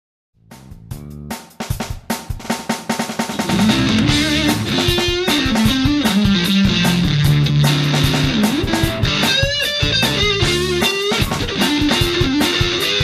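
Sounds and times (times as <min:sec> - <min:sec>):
steady drum beat: 0:00.4 - 0:13.0
distorted electric guitar riff: 0:03.2 - 0:13.0.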